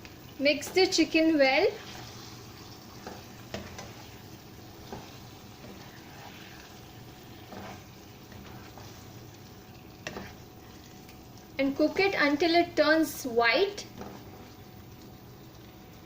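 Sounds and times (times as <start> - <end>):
chicken sizzling in oil: 0.0 - 16.0.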